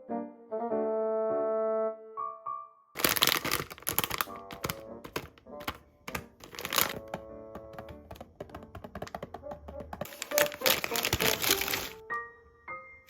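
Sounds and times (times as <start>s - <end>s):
background music: 0.0s - 13.0s
plastic wrappers crackling: 3.0s - 7.2s, 10.0s - 12.0s.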